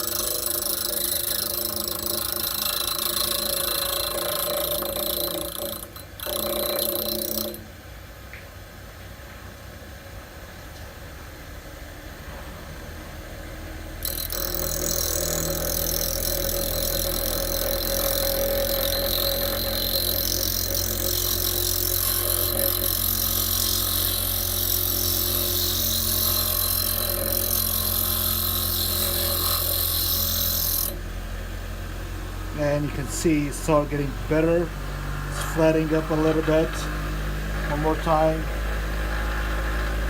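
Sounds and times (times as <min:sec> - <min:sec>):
bench grinder motor humming: 0:00.0 - 0:07.7, 0:13.0 - 0:40.0
harsh grinding hiss: 0:32.4 - 0:40.0.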